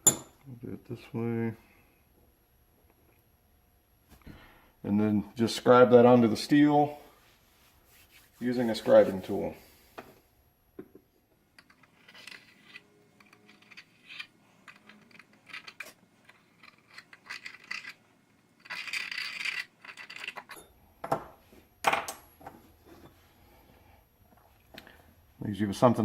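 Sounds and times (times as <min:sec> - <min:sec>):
steel tool scratching metal: 0:11.6 - 0:18.0.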